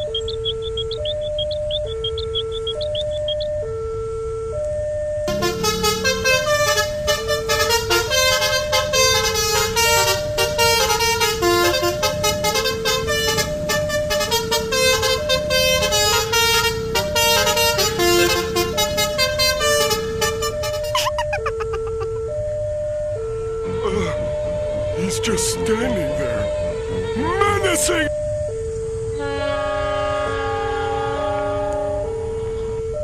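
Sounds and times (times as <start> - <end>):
melodic vehicle horn playing tune: 5.3 - 22.4, 25.0 - 28.0, 29.0 - 33.0.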